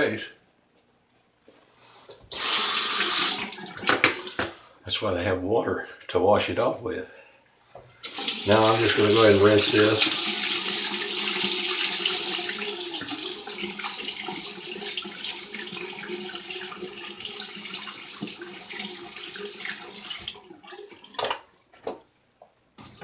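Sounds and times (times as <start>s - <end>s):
tap water running into sink: 2.3s - 4.5s, 8.0s - 21.4s.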